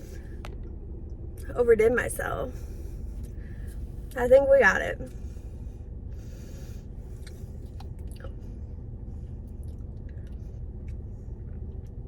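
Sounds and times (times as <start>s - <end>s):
low hum: 0.0s - 12.0s
person chewing food: 7.1s - 8.5s.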